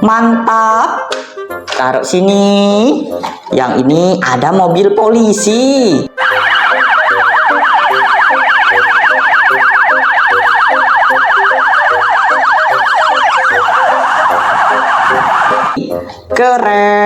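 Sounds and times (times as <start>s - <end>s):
police siren yelping: 6.0s - 15.8s.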